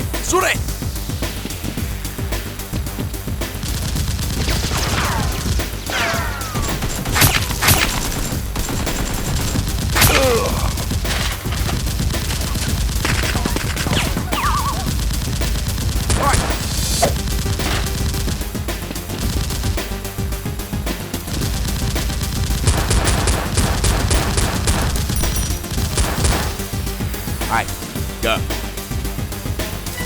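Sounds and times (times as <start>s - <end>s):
automatic gunfire: 3.6s - 19.9s, 21.3s - 26.7s.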